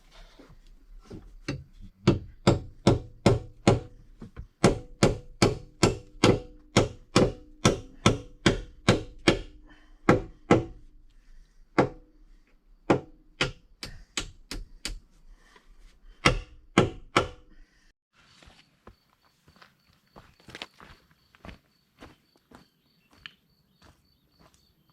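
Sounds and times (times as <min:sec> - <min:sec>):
hammer driving nails into wood: 0:01.5 - 0:04.0, 0:04.6 - 0:10.8, 0:11.8 - 0:12.0, 0:12.8 - 0:15.0, 0:16.2 - 0:17.5.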